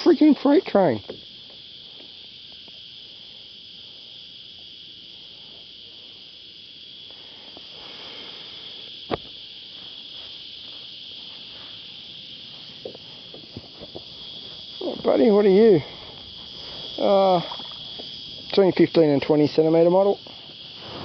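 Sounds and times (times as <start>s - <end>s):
cicadas droning: 0.0s - 21.0s.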